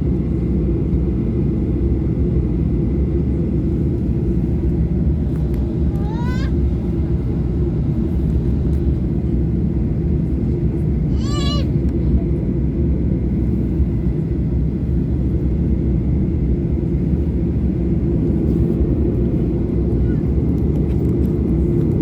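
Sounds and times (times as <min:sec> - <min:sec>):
jet engine rumble in cabin: 0:00.0 - 0:22.0.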